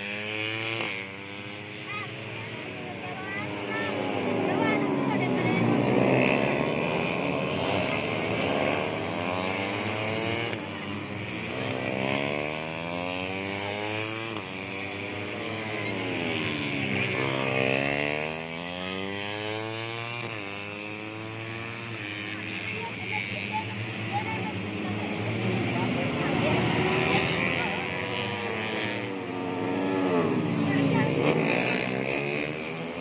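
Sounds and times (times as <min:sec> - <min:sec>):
racing motorcycles revving: 0:00.0 - 0:33.0.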